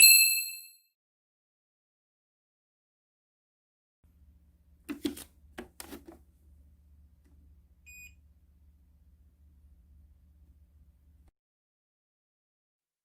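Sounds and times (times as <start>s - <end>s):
faint room hum: 4.1s - 11.3s.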